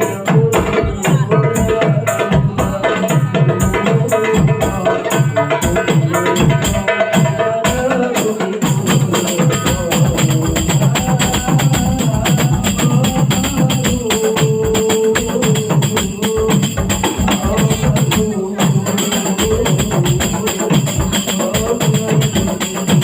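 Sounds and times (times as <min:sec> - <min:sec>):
frame drums playing fast rhythm: 0:00.0 - 0:23.0
jingling tambourines: 0:05.6 - 0:23.0.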